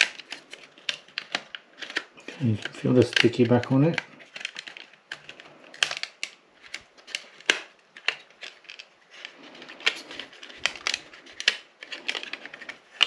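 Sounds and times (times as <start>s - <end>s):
plastic parts clicking and tapping: 0.0s - 13.0s.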